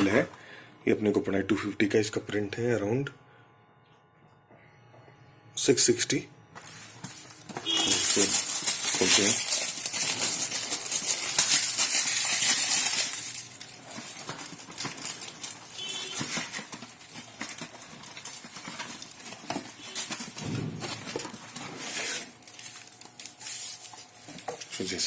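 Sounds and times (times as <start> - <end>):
wrapper crinkling and tearing: 6.6 - 25.0.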